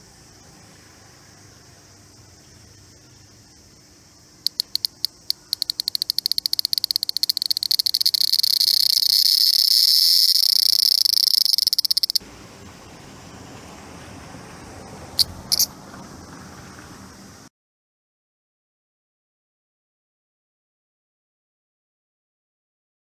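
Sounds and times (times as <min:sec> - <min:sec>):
cicada clicking buzz: 0:02.4 - 0:12.2, 0:15.2 - 0:15.7.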